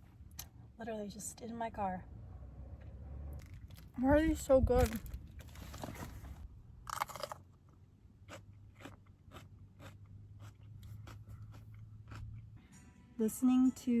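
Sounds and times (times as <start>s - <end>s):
person chewing crunchy snack: 6.9s - 7.5s, 8.2s - 12.5s.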